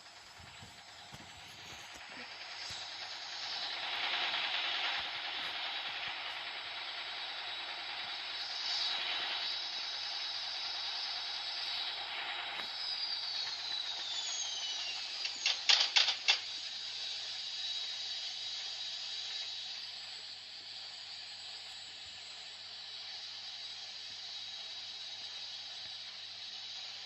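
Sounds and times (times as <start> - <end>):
washing machine running: 0.0 - 27.0
loud clacks: 15.2 - 16.4.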